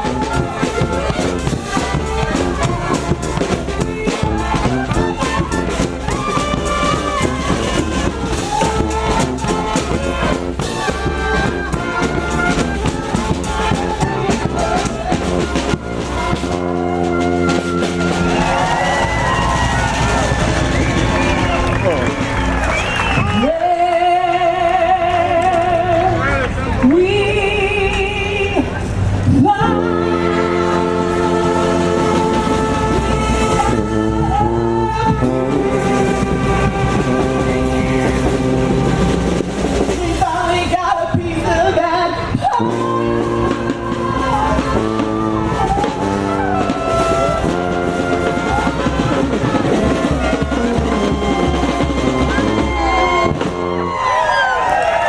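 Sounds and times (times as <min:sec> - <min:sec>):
brass and drum band playing: 0:00.0 - 0:25.2, 0:28.8 - 0:55.0
woman singing: 0:23.4 - 0:26.2, 0:26.8 - 0:38.3, 0:40.0 - 0:45.3.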